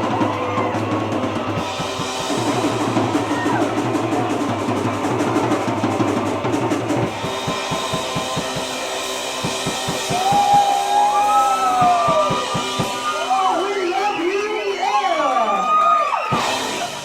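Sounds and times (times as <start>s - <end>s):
drum hits: 0.0s - 13.6s
rock band playing: 0.0s - 17.0s.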